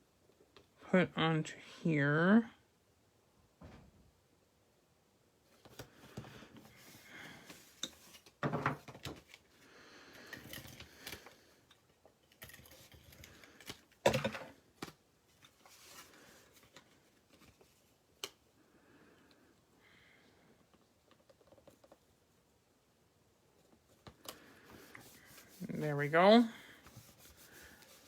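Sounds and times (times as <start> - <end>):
paper rustling: 14.8 - 18.0, 24.6 - 28.0.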